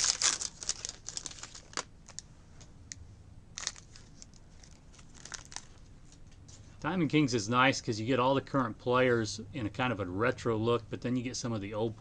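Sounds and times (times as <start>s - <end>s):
wrapper crinkling and tearing: 0.0s - 2.2s, 3.6s - 5.8s.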